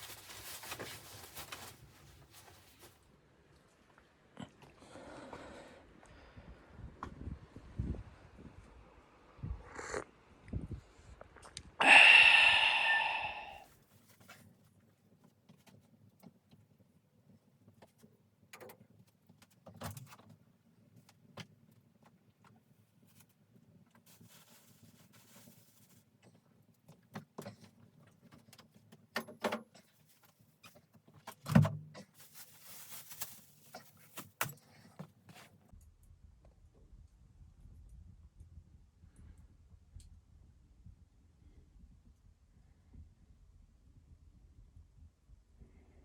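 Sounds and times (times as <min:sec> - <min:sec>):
rustling: 0:00.0 - 0:03.0, 0:24.0 - 0:26.0, 0:32.0 - 0:35.7.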